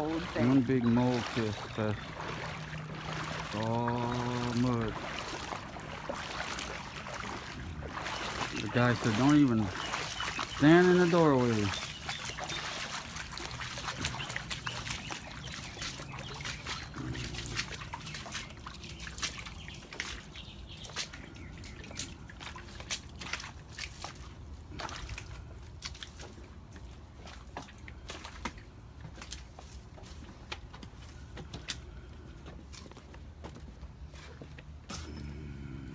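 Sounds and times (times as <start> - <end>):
water trickling and dripping: 0.0 - 30.7.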